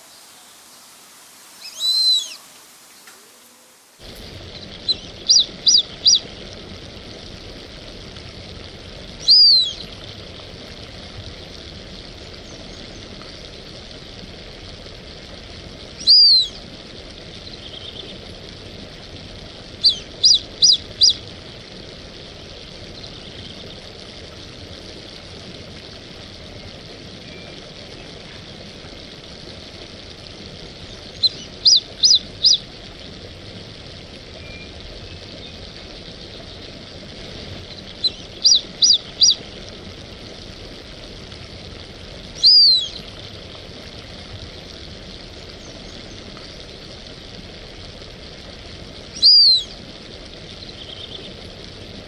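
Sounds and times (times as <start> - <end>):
steady background hiss: 0.0 - 11.2
duck whistling: 1.6 - 2.4, 4.8 - 6.2, 9.2 - 9.8, 16.0 - 16.6, 19.8 - 21.2, 31.2 - 32.6, 38.0 - 39.4, 42.4 - 43.0, 49.2 - 49.7.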